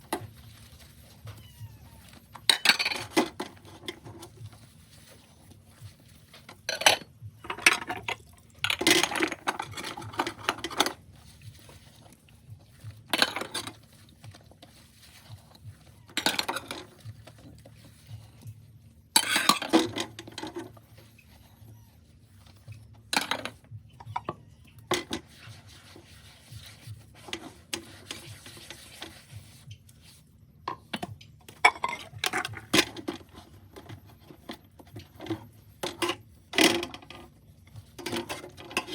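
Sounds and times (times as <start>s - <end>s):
plates and cutlery clinking in sink: 2.1s - 4.4s, 6.3s - 11.0s, 12.8s - 14.4s, 15.1s - 18.1s, 19.1s - 20.8s, 23.1s - 25.9s, 30.7s - 38.9s.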